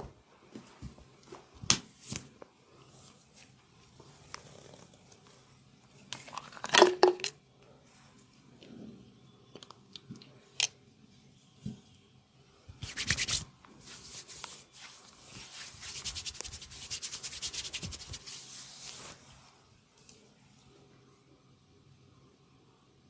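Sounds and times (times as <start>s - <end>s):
hands rubbing and scratching skin: 12.8s - 19.2s.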